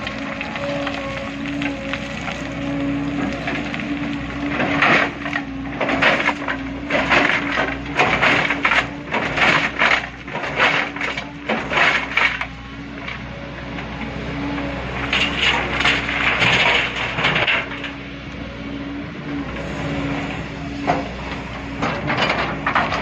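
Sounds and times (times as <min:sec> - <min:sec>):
rocks crashing into dump truck: 0:00.0 - 0:12.5
diesel engine hum: 0:00.0 - 0:23.0.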